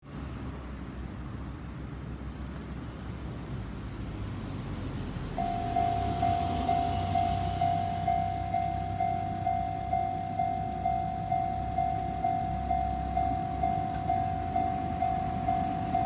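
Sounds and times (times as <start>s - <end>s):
crossing electronic bell tone: 5.4s - 16.0s.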